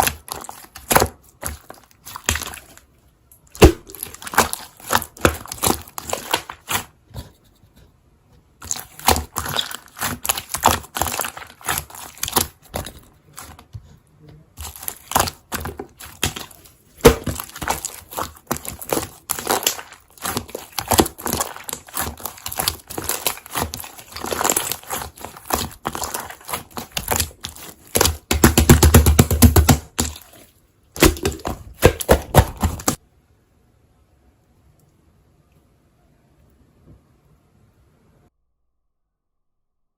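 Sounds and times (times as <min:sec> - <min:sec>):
slime crackling and popping: 0:00.0 - 0:02.9, 0:03.5 - 0:06.9, 0:08.6 - 0:13.6, 0:14.6 - 0:30.4, 0:31.0 - 0:33.0.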